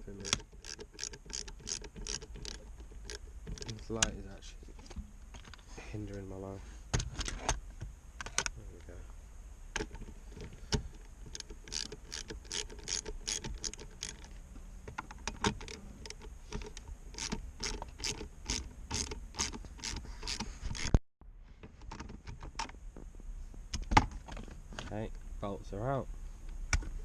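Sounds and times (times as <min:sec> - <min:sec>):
ratchet wrench clicking: 0:00.1 - 0:04.1, 0:11.3 - 0:14.3, 0:15.5 - 0:20.9.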